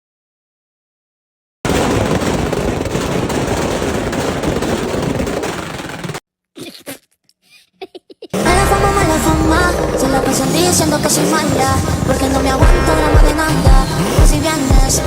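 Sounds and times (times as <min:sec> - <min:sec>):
exhaust pops and crackles: 0:01.7 - 0:06.2
sports car exhaust roaring: 0:08.4 - 0:15.0.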